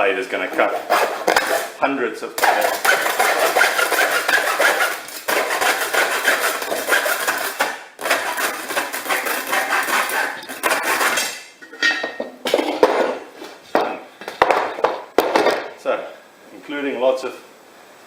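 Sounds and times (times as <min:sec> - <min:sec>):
hacksaw rasping through tyre: 0:02.4 - 0:11.4.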